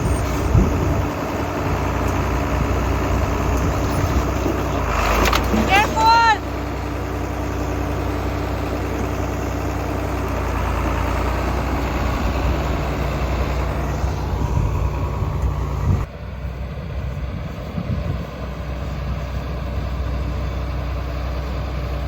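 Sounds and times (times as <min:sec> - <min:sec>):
tractor engine idling: 0:00.0 - 0:22.0.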